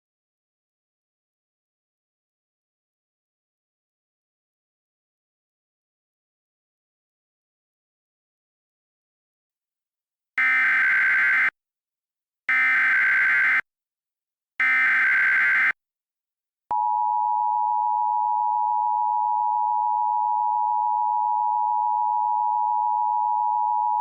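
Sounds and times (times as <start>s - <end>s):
buzzy digital data bursts: 10.4s - 11.5s, 14.6s - 15.7s.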